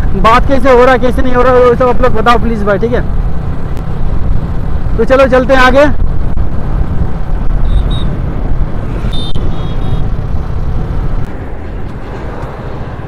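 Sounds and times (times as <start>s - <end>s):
short high beeps: 7.6s - 8.1s, 9.1s - 10.0s.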